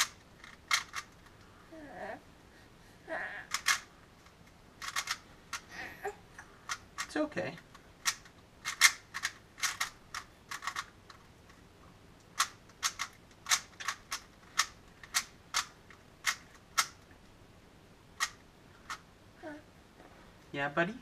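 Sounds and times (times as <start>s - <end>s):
plastic puzzle cube clicking: 0.0s - 1.5s, 3.4s - 5.8s, 6.6s - 11.2s, 12.2s - 17.1s, 18.2s - 19.0s.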